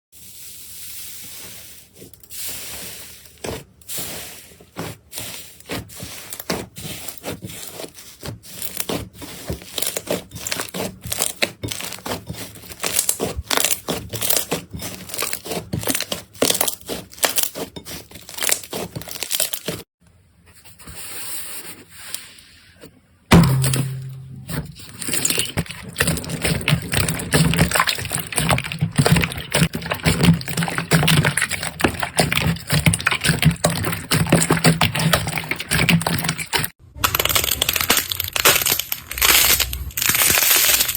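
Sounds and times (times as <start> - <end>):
crackling slime squish: 4.7 - 19.9, 24.8 - 40.9.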